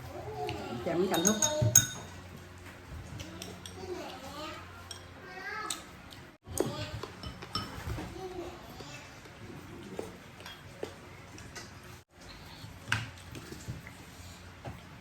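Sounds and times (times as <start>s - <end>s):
tableware clicking and tapping: 1.0s - 2.3s, 4.8s - 5.2s, 6.6s - 8.0s.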